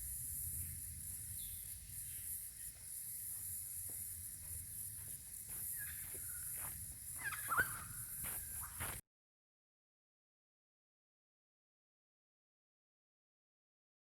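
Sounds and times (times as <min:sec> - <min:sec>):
steady high hiss: 0:00.0 - 0:07.2
faint bird chirps: 0:05.6 - 0:09.0.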